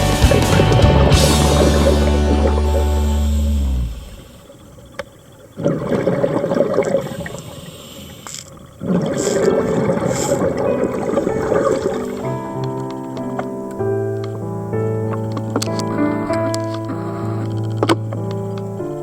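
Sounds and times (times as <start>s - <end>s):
diver inhaling through regulator: 15.9s - 17.8s.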